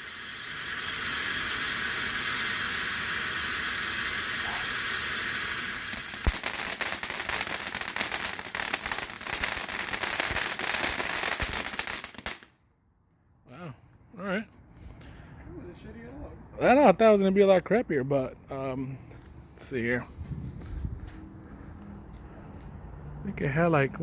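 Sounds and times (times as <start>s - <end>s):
firework fountain hissing and crackling: 0.0s - 12.5s.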